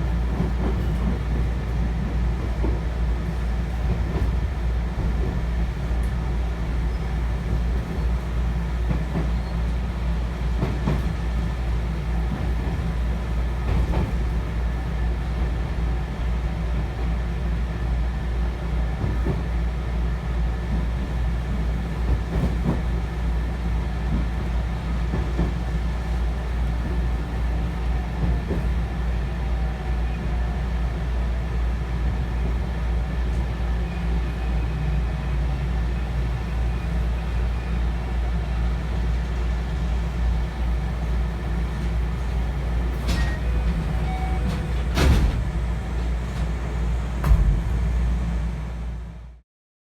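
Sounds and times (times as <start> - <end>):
train cabin low rumble: 0.0 - 49.4.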